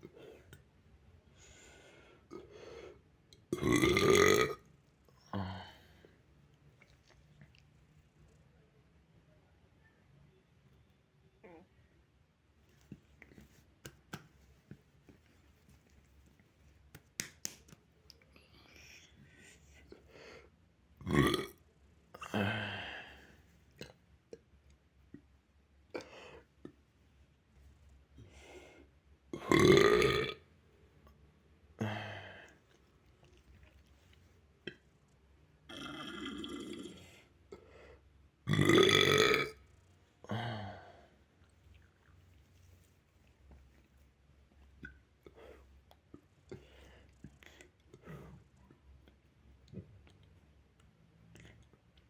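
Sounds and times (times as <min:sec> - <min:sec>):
boy burping: 0:03.5 - 0:04.6, 0:21.0 - 0:21.6, 0:29.4 - 0:30.4, 0:35.7 - 0:37.0, 0:38.5 - 0:39.6.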